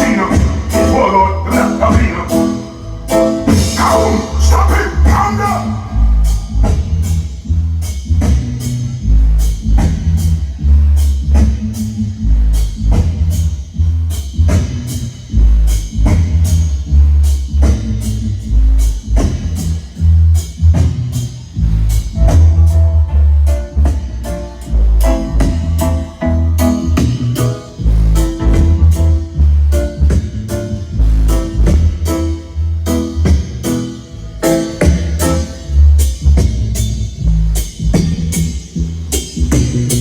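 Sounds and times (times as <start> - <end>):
music with booming bass: 0.0 - 40.0
steady drum beat: 0.0 - 40.0.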